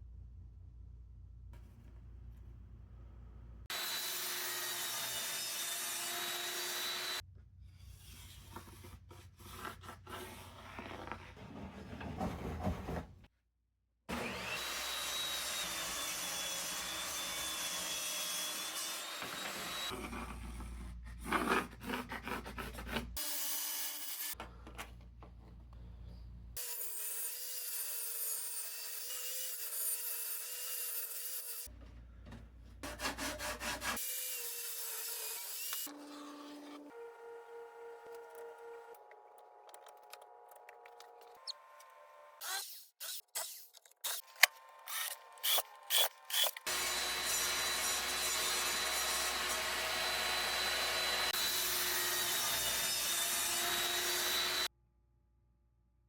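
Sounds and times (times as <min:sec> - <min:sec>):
power saw cutting wood: 0:03.7 - 0:07.2, 0:14.1 - 0:20.0, 0:32.8 - 0:54.7.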